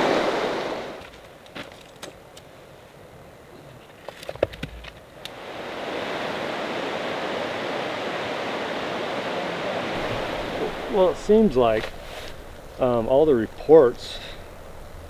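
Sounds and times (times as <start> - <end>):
rushing creek water: 0.0 - 1.0, 5.3 - 15.0.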